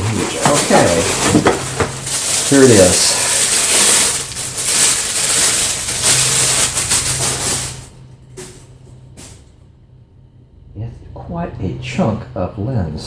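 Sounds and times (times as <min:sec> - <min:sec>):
packaging rustling and crinkling: 0:00.0 - 0:09.4.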